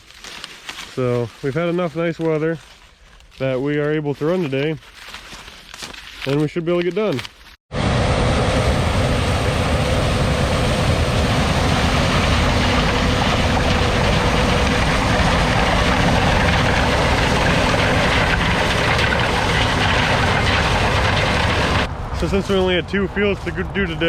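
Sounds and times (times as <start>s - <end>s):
combine harvester running: 7.7s - 22.4s.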